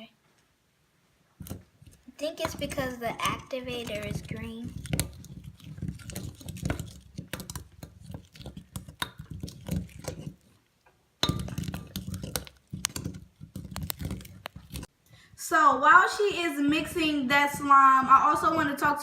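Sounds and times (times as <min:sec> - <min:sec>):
slime stirred with sticky squelches: 0:01.0 - 0:15.4, 0:16.2 - 0:19.0.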